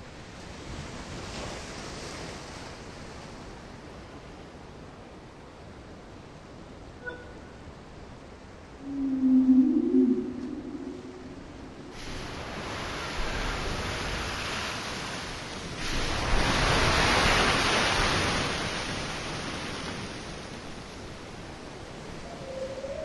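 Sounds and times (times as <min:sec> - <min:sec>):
waves washing on a shore: 0:11.6 - 0:22.8.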